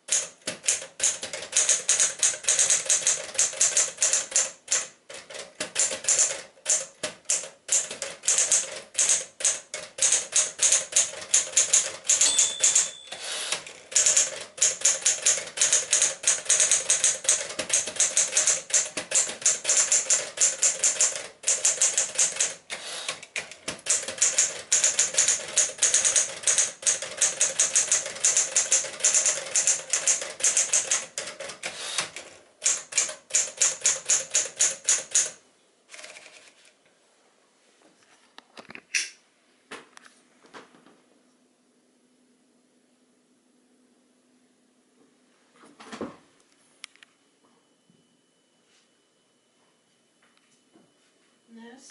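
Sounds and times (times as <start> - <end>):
typewriter keys clacking: 0.1 - 35.4
typewriter bell ring: 7.8 - 22.6, 23.9 - 31.1.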